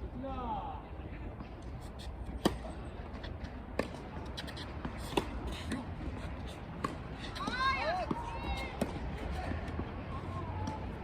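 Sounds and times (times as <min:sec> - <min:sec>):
tennis ball strikes and bounces: 0:02.3 - 0:10.0.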